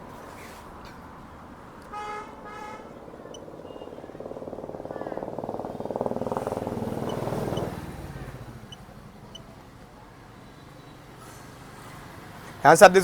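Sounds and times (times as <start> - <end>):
scooter engine running: 2.6 - 10.0.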